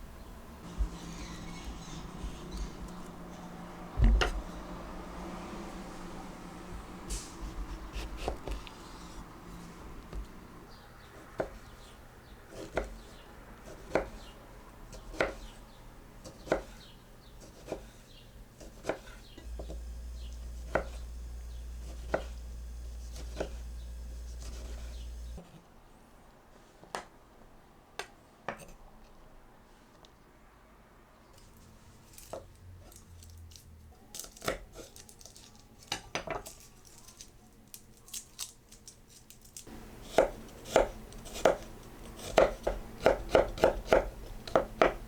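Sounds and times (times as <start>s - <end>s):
low hum: 0.0s - 10.7s, 19.4s - 25.4s
knife chopping on cutting board: 7.4s - 8.6s, 11.4s - 11.6s, 13.6s - 14.3s, 14.9s - 15.6s, 16.2s - 16.8s, 17.4s - 18.0s, 18.6s - 19.8s, 20.5s - 21.1s, 21.8s - 22.4s, 23.1s - 23.7s, 24.3s - 25.2s, 39.7s - 45.0s.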